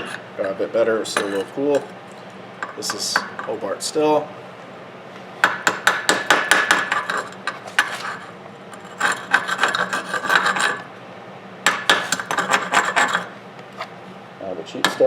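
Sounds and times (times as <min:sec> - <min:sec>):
chipping hammer tapping metal: 0:05.4 - 0:07.3.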